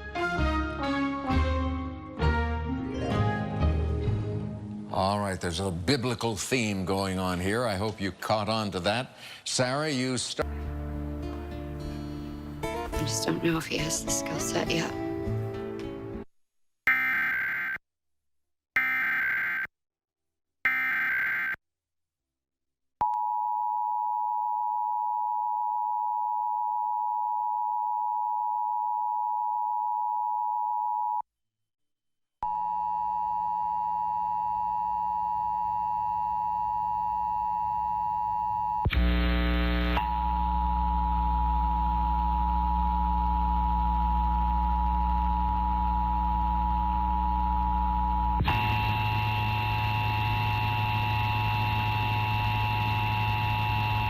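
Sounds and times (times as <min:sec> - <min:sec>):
buzz: 0:38.9 - 0:54.0.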